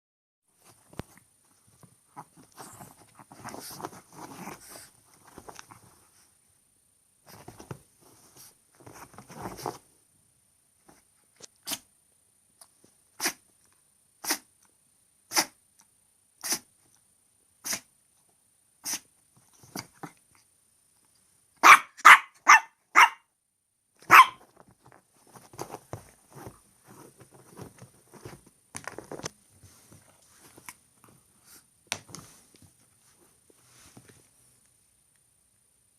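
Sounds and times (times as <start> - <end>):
soft scuffling and rustling: 0.5 - 6.5, 7.2 - 10.0, 24.4 - 34.7
dog sneezing: 11.6 - 11.9, 13.2 - 13.4, 14.2 - 14.5, 15.3 - 15.6, 16.4 - 16.7, 17.6 - 17.9, 18.8 - 19.1
small dog barking: 21.6 - 23.3, 24.0 - 24.4.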